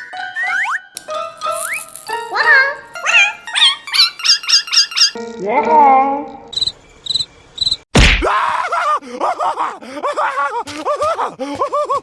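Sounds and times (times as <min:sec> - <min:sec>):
cartoon cricket chirps: 0:03.0 - 0:05.2
loud whack: 0:07.9 - 0:08.3.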